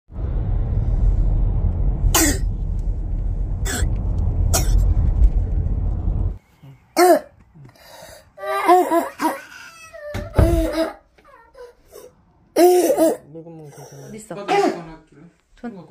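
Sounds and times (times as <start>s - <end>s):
low rumble: 0.0s - 6.4s
child's barking cough: 12.6s - 13.3s, 14.5s - 14.9s.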